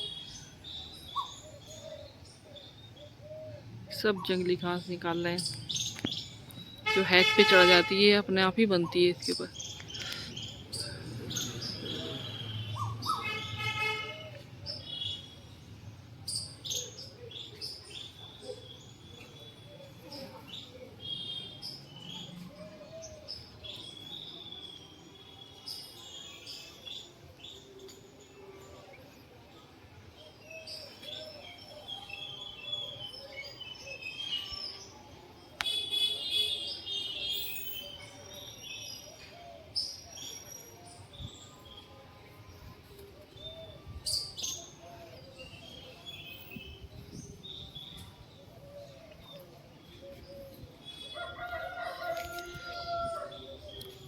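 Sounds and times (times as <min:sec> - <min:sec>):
birds chirping: 0:00.0 - 0:25.6
rooster crowing: 0:51.2 - 0:53.4.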